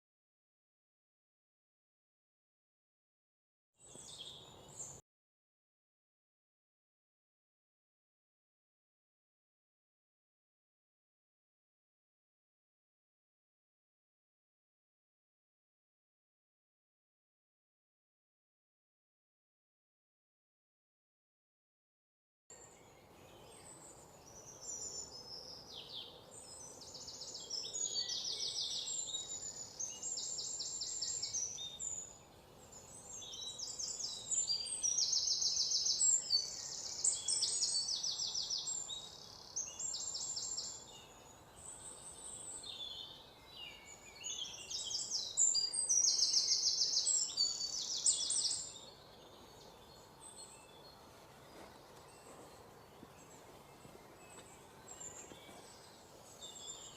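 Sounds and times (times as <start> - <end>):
birds singing trills: 3.8 - 5.0, 22.5 - 56.9
faint background hiss: 22.6 - 56.9.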